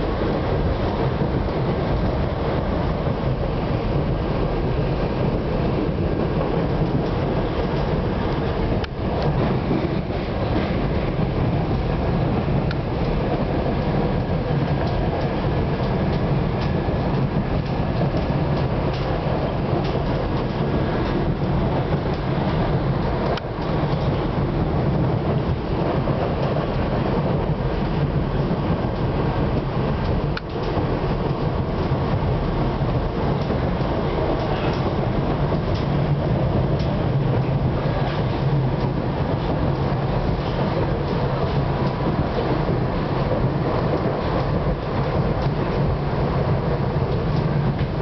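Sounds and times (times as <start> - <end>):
train wheels rumbling on rails: 0.0 - 48.0.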